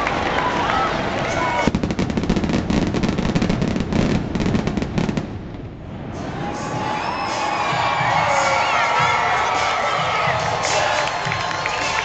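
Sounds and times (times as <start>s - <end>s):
crowd cheering and whistling: 0.0s - 1.7s, 6.0s - 12.0s
fireworks bangs and crackles: 0.0s - 8.4s.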